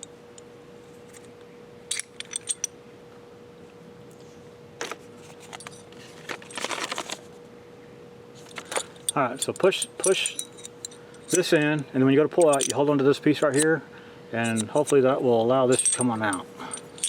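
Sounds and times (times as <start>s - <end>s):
faint steady hum: 0.0s - 17.0s
metallic clinks and jangling: 1.9s - 2.7s, 5.5s - 5.9s, 8.4s - 13.7s, 14.4s - 15.0s, 15.7s - 17.0s.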